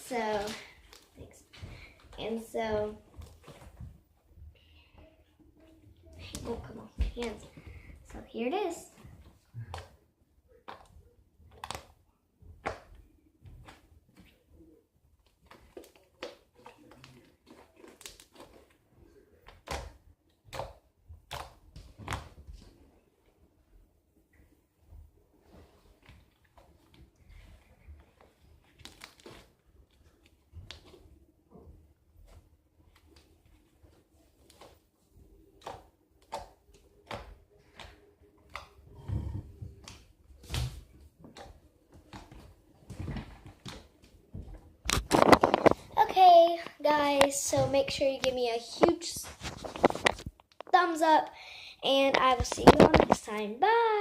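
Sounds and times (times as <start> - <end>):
hands squishing slime: 9.2 - 14.6, 15.2 - 22.9, 32.2 - 50.8
slime squelching and popping: 9.6 - 14.4, 15.2 - 18.8, 19.4 - 22.7.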